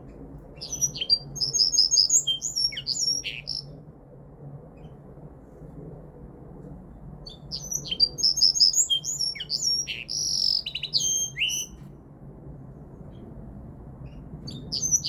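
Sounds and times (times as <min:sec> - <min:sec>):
bird singing high twittering: 0:00.6 - 0:03.7, 0:07.3 - 0:11.8, 0:14.5 - 0:15.0.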